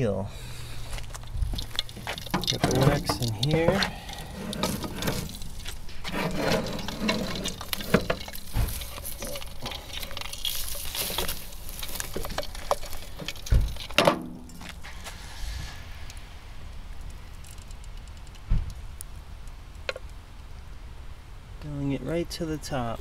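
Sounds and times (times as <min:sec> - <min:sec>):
small clicks and scrapes: 0:00.9 - 0:16.2, 0:17.0 - 0:18.8
hiss: 0:14.8 - 0:16.6.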